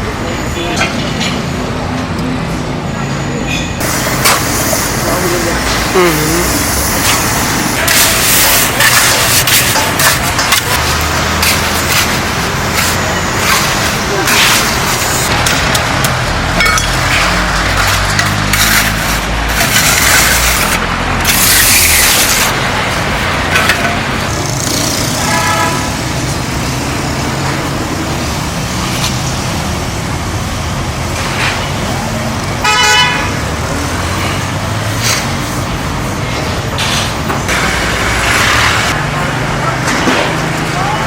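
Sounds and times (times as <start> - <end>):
engine running: 3.8 - 32.7, 33.4 - 41.0
vehicle horn: 25.1 - 26.0, 32.6 - 33.4.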